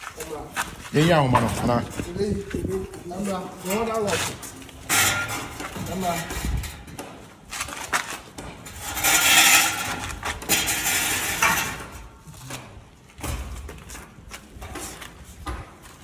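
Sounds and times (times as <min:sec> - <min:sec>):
metal clanking and scraping: 0:01.0 - 0:13.7
metal knocks: 0:04.8 - 0:07.3.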